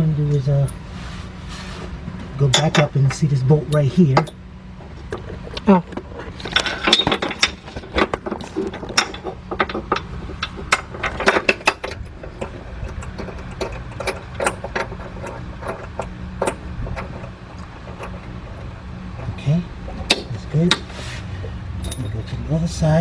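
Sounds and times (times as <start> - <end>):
steady low hum: 0.0 - 23.0
metal tools clinking: 2.4 - 4.4, 5.1 - 21.2, 21.8 - 22.6.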